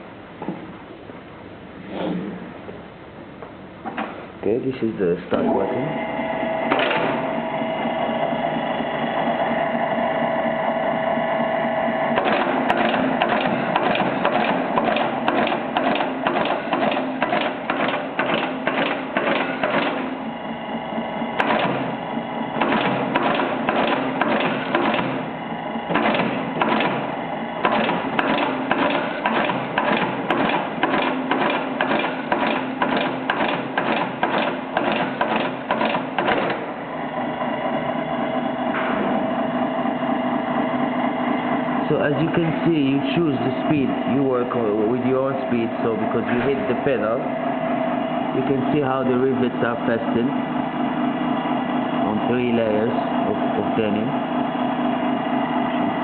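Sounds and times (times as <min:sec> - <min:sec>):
machine motor humming: 0:01.8 - 0:56.0
rivet machine clacking: 0:12.1 - 0:20.1, 0:21.4 - 0:22.0, 0:22.6 - 0:25.2, 0:25.9 - 0:36.7.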